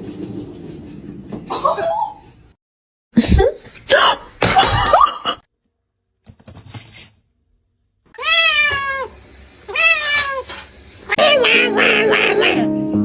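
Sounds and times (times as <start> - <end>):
cat meowing: 8.2 - 10.6.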